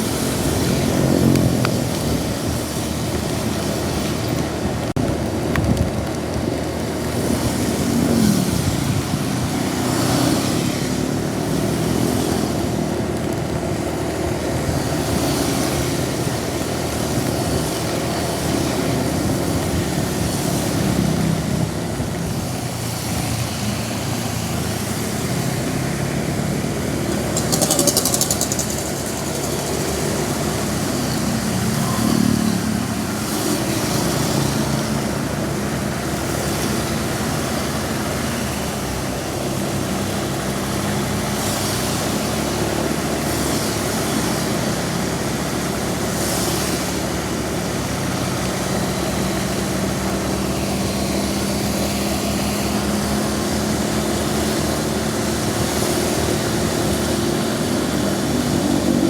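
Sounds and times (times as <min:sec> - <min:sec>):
heavy rain: 0:00.0 - 0:59.0
traffic on wet road: 0:00.0 - 0:59.0
short rapid rattle: 0:27.2 - 0:30.5.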